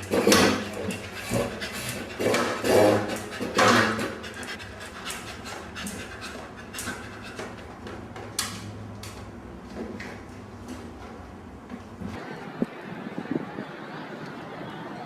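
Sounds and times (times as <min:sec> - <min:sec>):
dog panting: 0:00.0 - 0:08.0.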